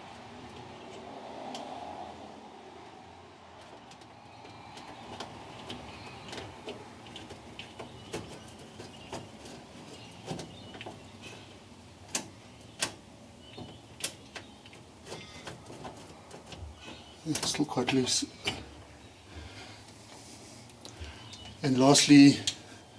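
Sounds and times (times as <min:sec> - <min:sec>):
faint bird chirps: 0:20.9 - 0:22.9.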